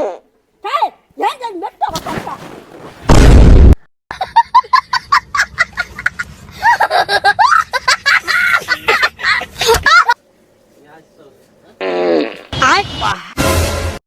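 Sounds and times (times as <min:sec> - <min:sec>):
people laughing and giggling: 0:04.1 - 0:10.2
loud farting noise: 0:11.8 - 0:12.7.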